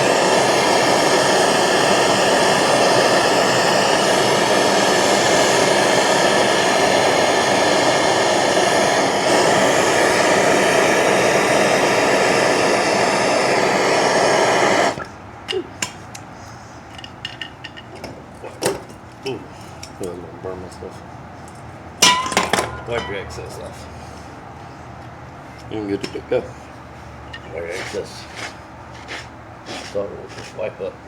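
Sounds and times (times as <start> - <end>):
gas torch flame hissing: 0.0 - 15.1, 27.5 - 30.7.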